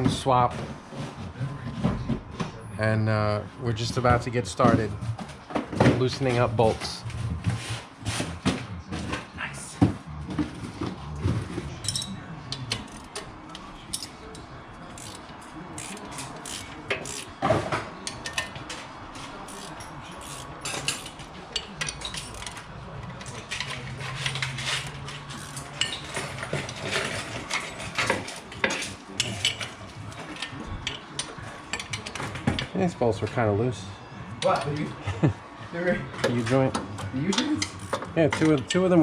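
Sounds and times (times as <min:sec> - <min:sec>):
wrenches clinking on metal: 0:11.7 - 0:13.3, 0:13.9 - 0:32.6, 0:37.0 - 0:38.8.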